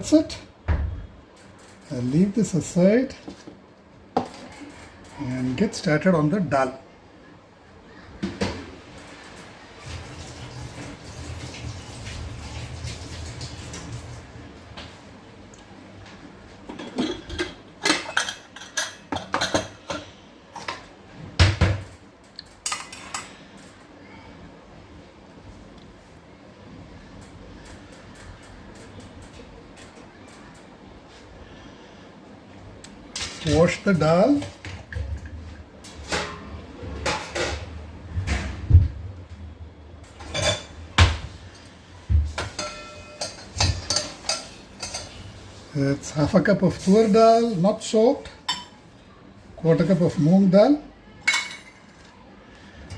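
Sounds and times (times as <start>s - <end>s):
pots and utensils clattering: 16.6s - 21.9s, 22.6s - 23.4s, 35.9s - 38.4s, 40.2s - 41.2s, 42.3s - 45.4s, 51.2s - 52.0s
vessel ringing: 42.5s - 45.0s.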